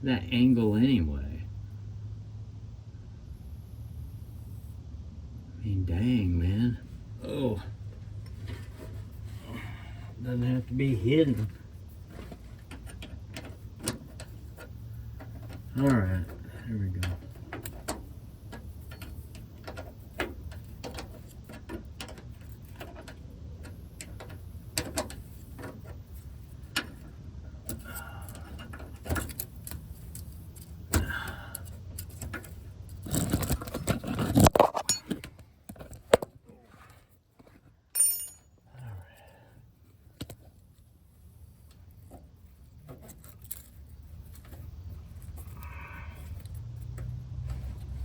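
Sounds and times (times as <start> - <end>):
metal hand tools clinking: 37.9 - 38.6.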